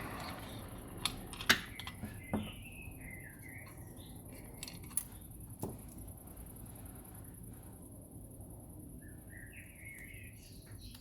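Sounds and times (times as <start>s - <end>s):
small hard parts clicking on bench: 0.2s - 2.6s.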